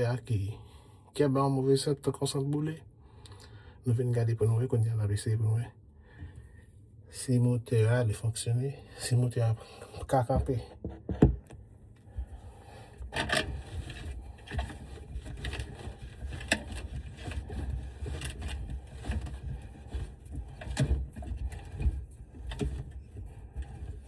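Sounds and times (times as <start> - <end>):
garbage disposal rumble: 8.9 - 24.0
scrapes and knocks: 9.8 - 24.0.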